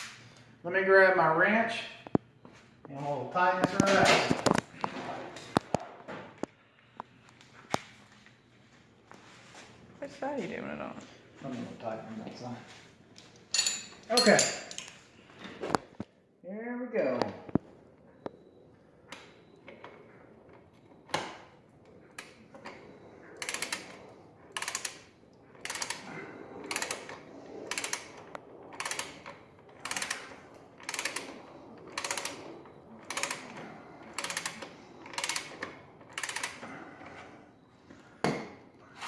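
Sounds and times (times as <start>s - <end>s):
ratchet wrench clicking: 34.2s - 35.5s, 36.2s - 36.6s.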